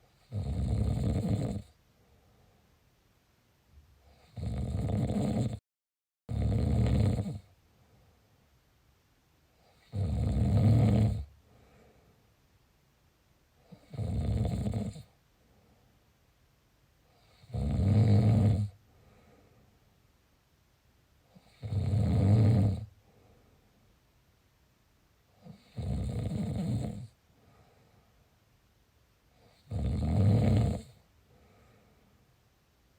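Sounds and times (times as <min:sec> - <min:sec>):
person snoring: 0:00.2 - 0:01.7, 0:04.1 - 0:05.6, 0:06.3 - 0:07.5, 0:09.7 - 0:11.3, 0:13.7 - 0:15.1, 0:17.2 - 0:18.8, 0:21.4 - 0:22.9, 0:25.4 - 0:27.1, 0:29.5 - 0:31.0
faint breathing: 0:01.9 - 0:02.8, 0:07.6 - 0:08.5, 0:11.4 - 0:12.4, 0:15.3 - 0:16.1, 0:18.8 - 0:20.0, 0:22.9 - 0:23.9, 0:27.3 - 0:28.4, 0:31.2 - 0:32.4.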